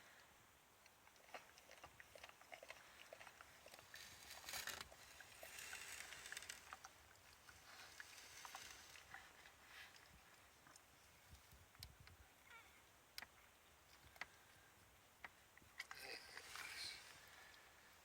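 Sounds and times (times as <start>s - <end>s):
puppy chewing: 0.9s - 10.9s
rustling: 2.8s - 10.8s.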